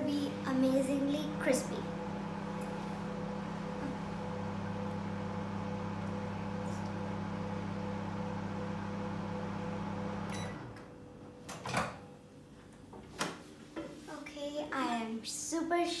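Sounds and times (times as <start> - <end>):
microwave oven humming: 0.0 - 12.9.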